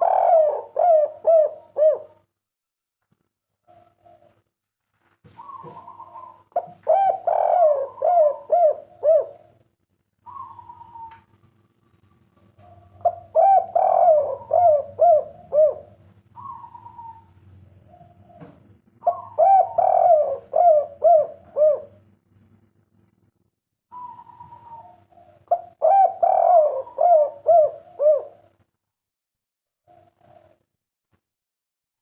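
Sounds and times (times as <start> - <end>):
dove cooing: 0.0 - 2.3, 5.3 - 9.6, 10.2 - 11.4, 12.5 - 22.0, 23.9 - 28.6, 29.8 - 30.7
faint steady hum: 5.4 - 28.7.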